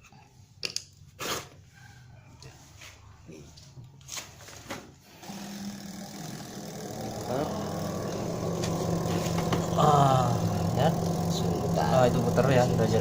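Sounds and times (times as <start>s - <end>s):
spin-dryer motor humming: 5.2s - 13.0s.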